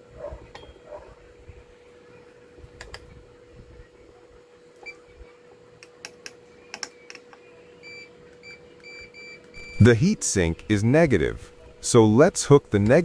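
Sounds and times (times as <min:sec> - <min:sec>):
test probes clicking and tapping: 0:05.8 - 0:09.6.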